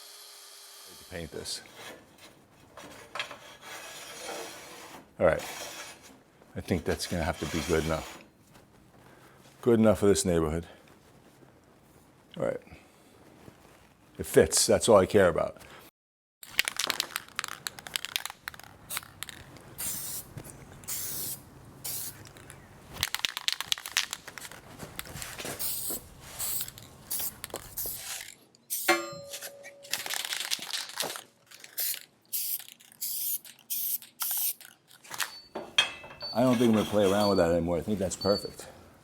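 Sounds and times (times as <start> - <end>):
metal squeak: 36.2 - 37.6.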